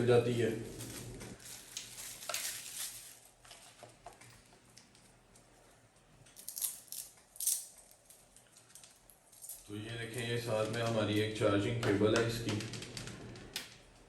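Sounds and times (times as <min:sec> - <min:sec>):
packaging rustling: 0:00.3 - 0:04.5.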